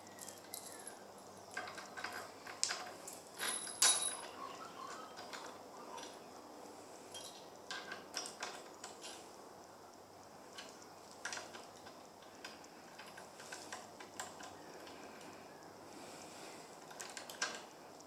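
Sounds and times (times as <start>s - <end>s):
steel bolts clinking against metal vise: 1.6s - 5.6s.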